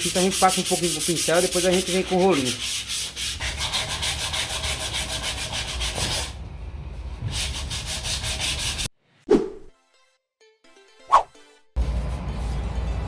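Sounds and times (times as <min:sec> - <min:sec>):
sandpaper scuffing wood: 0:00.0 - 0:06.4, 0:07.2 - 0:08.9.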